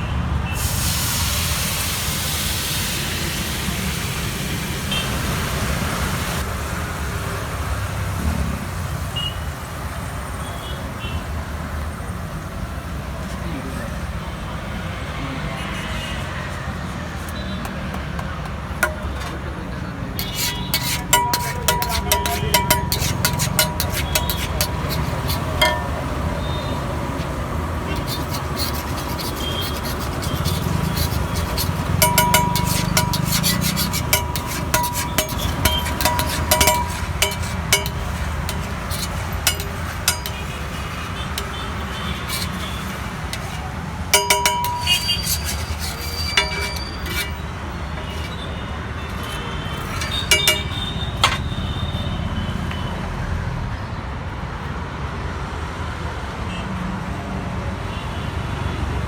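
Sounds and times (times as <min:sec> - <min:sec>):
road traffic rumble: 0:00.0 - 0:59.0
metal utensils clinking on griddle: 0:17.4 - 0:19.5, 0:20.2 - 0:51.7.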